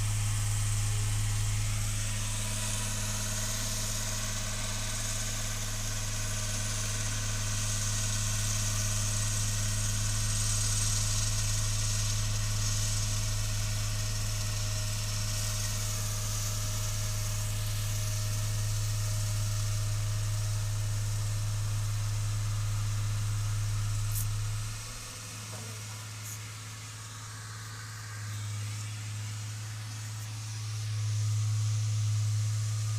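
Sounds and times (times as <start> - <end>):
road roller engine humming: 21.4 - 32.8.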